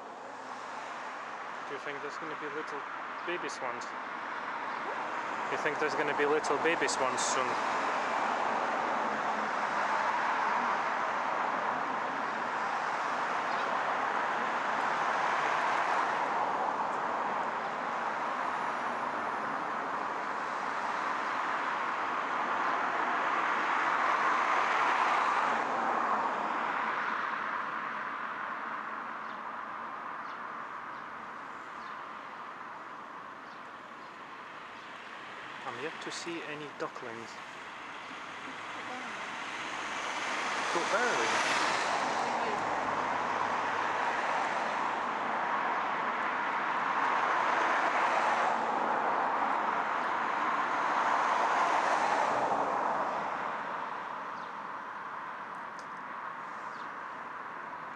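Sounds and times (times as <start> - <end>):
outdoor background noise: 0.0 - 57.9
passing vehicles tyre hiss: 4.8 - 27.9, 34.6 - 53.8.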